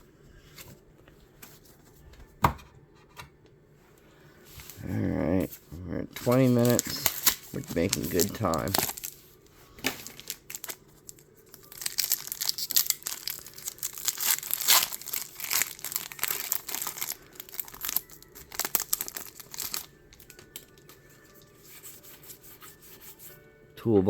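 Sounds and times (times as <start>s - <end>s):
foil wrapper crinkling and tearing: 6.2s - 21.8s.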